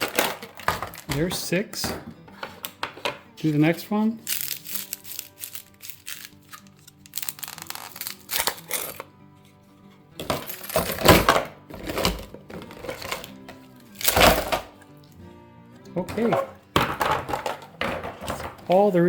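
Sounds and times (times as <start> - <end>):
ice tray crackling and creaking: 0.0 - 1.3, 4.4 - 9.1, 10.2 - 14.7
ice clunks: 0.0 - 3.2, 10.2 - 14.8, 16.0 - 19.0
soft background music: 0.0 - 19.0.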